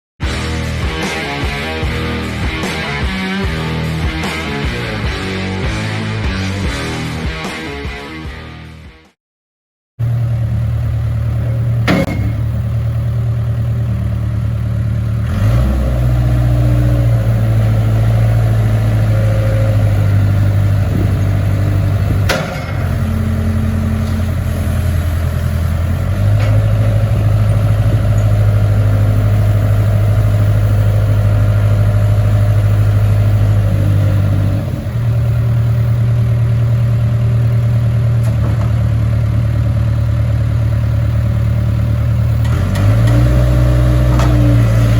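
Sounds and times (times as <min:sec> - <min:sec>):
diesel engine running: 0:00.2 - 0:07.5, 0:10.0 - 0:44.9
sharp knocks: 0:11.8 - 0:12.6, 0:22.3 - 0:22.9.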